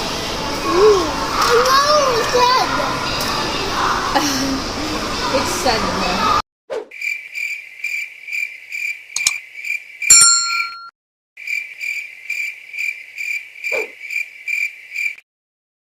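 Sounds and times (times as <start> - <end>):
cricket chirps: 6.9 - 10.1, 11.4 - 15.2
bell-like ding: 10.1 - 10.9.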